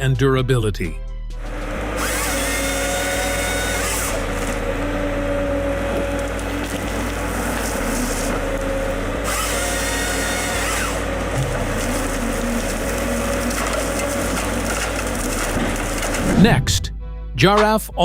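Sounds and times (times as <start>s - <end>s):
engine and hydraulic hum: 1.1s - 17.2s
saw rasping through timber: 1.3s - 16.3s.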